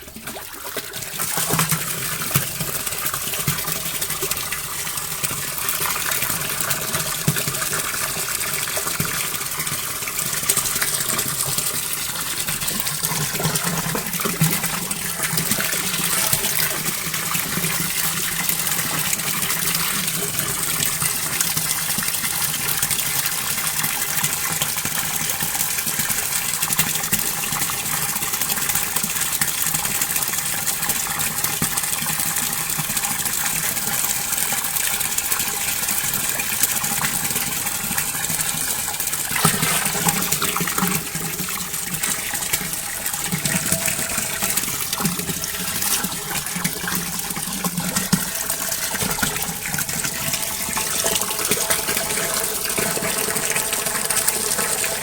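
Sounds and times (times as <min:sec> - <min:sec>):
rippling water: 0:00.0 - 0:55.0
water splash: 0:39.3 - 0:41.0.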